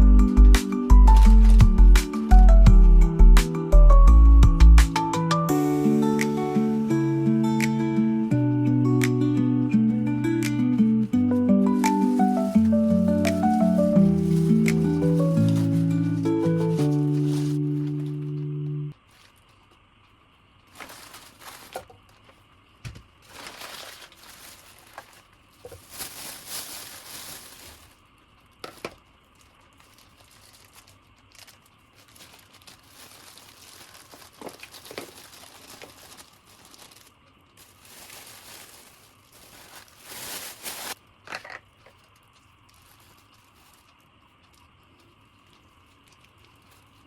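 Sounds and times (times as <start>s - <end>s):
plastic packaging crinkling: 0.7s - 1.9s, 10.9s - 19.8s, 20.6s - 47.0s.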